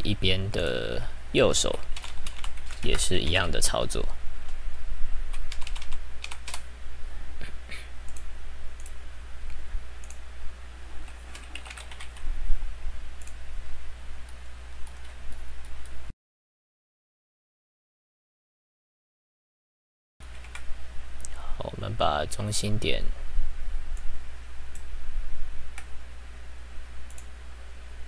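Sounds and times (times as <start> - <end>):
steady low hum: 0.0 - 16.1, 20.2 - 28.0
keyboard typing: 1.6 - 3.1, 5.3 - 6.7, 11.0 - 12.3, 20.3 - 20.7.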